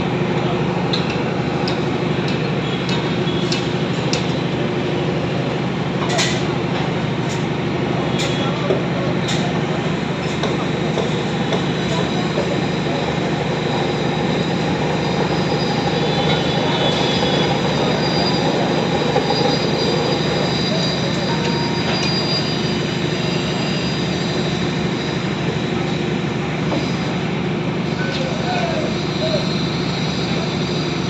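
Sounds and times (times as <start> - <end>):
heavy machinery humming: 0.0 - 31.0
high-pitched metallic squeals: 11.9 - 25.3.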